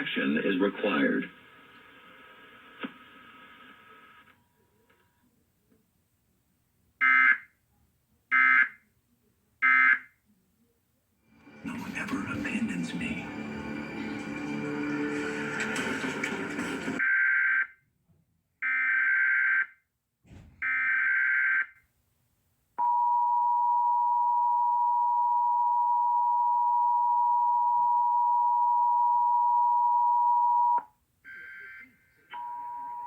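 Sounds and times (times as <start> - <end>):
broadcast audio: 0.0 - 5.0, 11.3 - 17.0
steady two-tone beep: 22.8 - 30.8.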